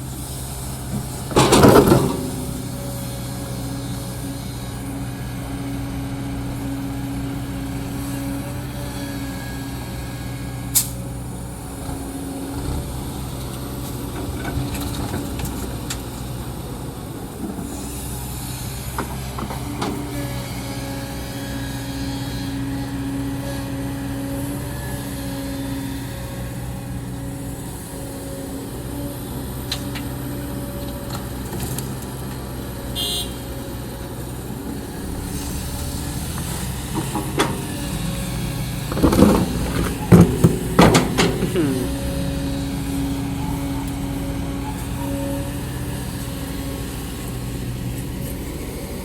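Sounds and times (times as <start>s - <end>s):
excavator engine running: 0.0s - 49.0s
metal bucket clanking and scraping: 1.3s - 2.8s, 38.9s - 41.9s.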